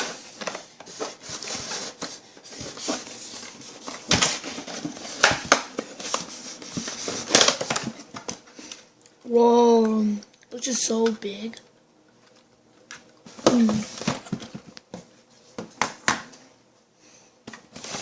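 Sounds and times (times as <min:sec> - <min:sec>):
packaging rustling and scraping: 0:00.0 - 0:08.8, 0:17.6 - 0:18.0.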